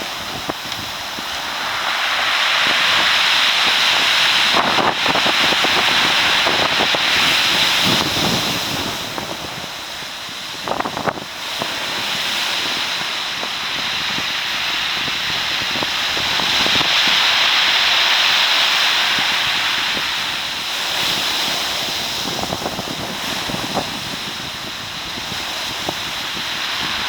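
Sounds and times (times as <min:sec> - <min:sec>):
surf surging onto cobbles: 0:00.0 - 0:27.0.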